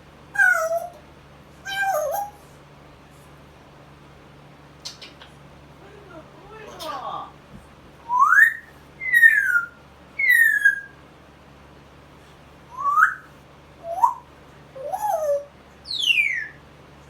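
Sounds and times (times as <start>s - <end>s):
parrot whistling: 0.4s - 1.0s, 1.7s - 2.4s, 8.1s - 11.0s, 12.7s - 16.6s.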